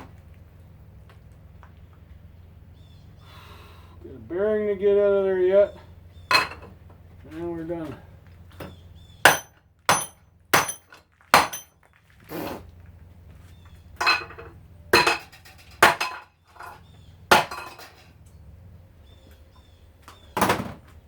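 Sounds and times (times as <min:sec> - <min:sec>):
hammer striking metal: 0:09.3 - 0:11.7.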